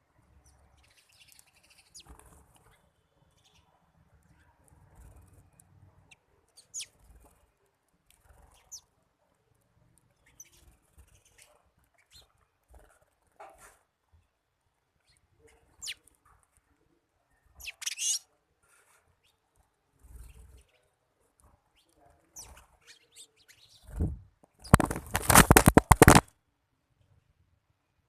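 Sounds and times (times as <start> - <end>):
birds chirping: 0.0 - 7.6, 8.2 - 9.0, 10.0 - 12.6, 15.0 - 16.1, 17.2 - 26.2.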